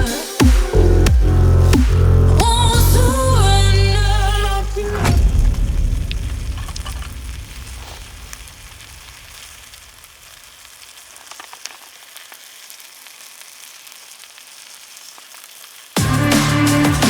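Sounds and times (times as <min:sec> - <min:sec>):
electronic music with heavy beat: 0:00.0 - 0:05.3, 0:16.0 - 0:17.0
food sizzling in a pan: 0:05.4 - 0:16.8.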